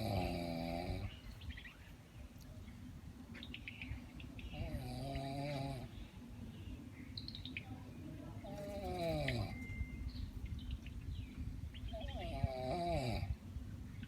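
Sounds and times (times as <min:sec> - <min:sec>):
woman snoring: 0:04.6 - 0:05.9, 0:08.6 - 0:09.6, 0:12.4 - 0:13.3
faint high chirps: 0:06.0 - 0:12.4.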